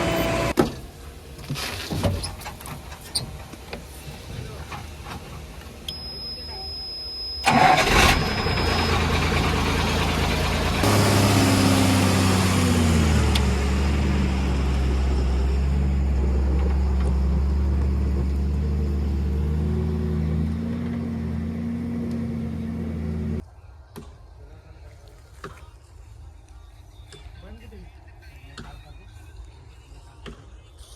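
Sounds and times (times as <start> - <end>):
diesel engine running: 0.0 - 0.6, 7.4 - 23.4.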